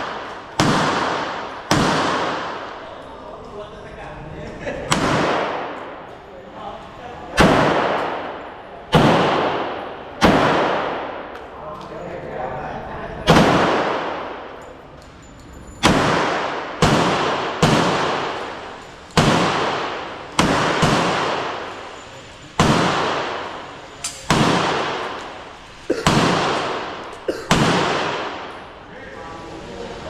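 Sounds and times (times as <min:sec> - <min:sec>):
handgun shots echoing: 0:00.0 - 0:02.8, 0:15.8 - 0:21.9, 0:22.6 - 0:28.7.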